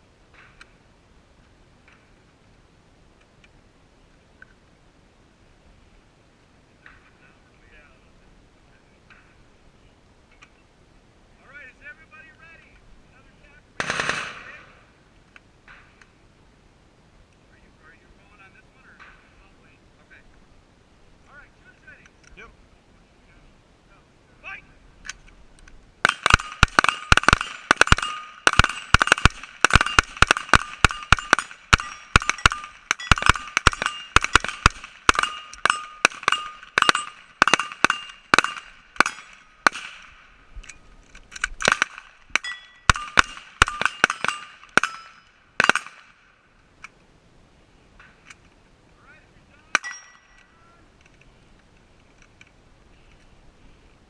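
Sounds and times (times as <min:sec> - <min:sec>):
rapid rifle fire: 0:13.8 - 0:14.8, 0:26.0 - 0:40.3, 0:41.6 - 0:46.2
metallic ring of targets: 0:26.1 - 0:39.9, 0:41.7 - 0:46.2, 0:49.7 - 0:50.5.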